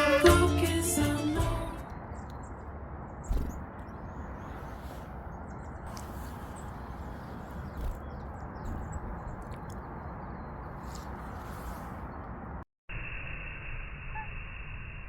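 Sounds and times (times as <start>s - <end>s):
small birds chirping: 0.0s - 12.6s
wind on microphone: 3.2s - 12.6s.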